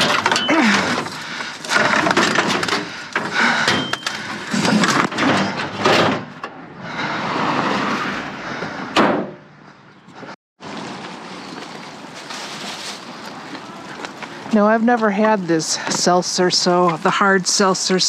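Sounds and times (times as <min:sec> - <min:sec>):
objects clattering in dumpster: 0:00.0 - 0:06.6
rustling: 0:10.8 - 0:14.4.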